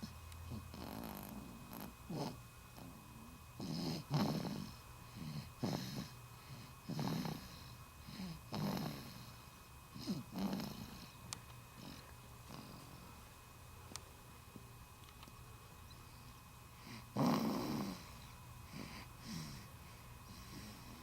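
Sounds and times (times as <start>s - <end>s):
baby snoring: 0.0s - 11.2s, 16.8s - 19.7s.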